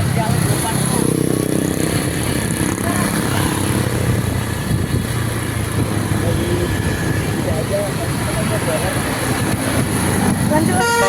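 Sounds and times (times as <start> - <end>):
bus engine rumbling: 0.0 - 11.0.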